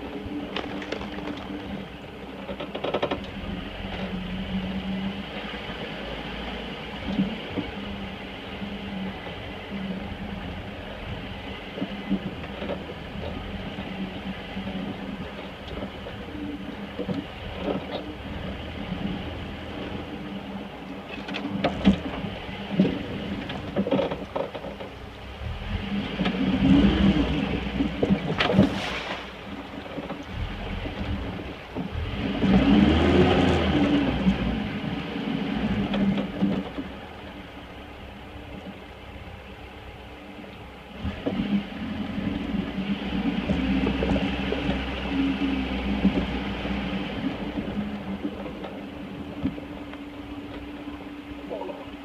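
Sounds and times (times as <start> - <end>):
pickup engine running and revving: 0.0 - 52.0
knocks and clunks: 2.4 - 4.2, 21.1 - 34.4.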